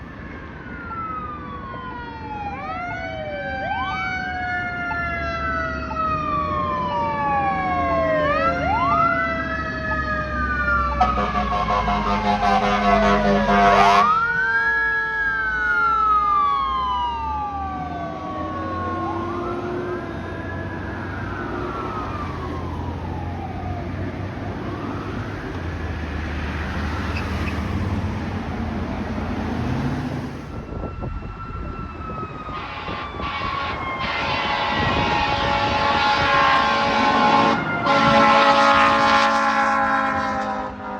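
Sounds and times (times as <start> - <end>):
siren wailing: 0.0 - 40.9
air horn blast: 11.0 - 14.2, 32.5 - 40.9.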